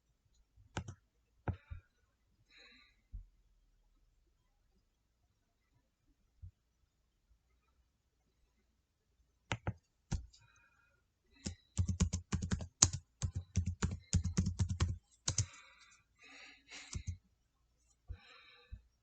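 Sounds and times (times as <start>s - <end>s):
typing on a keyboard: 0.8s - 1.0s, 11.4s - 15.6s, 16.9s - 17.2s.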